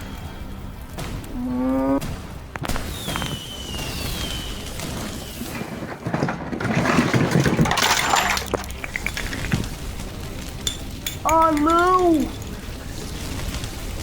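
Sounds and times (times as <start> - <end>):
cartoon fireworks hissing and crackling: 0.0 - 6.1, 8.6 - 14.0
sharp cracks: 1.0 - 6.0.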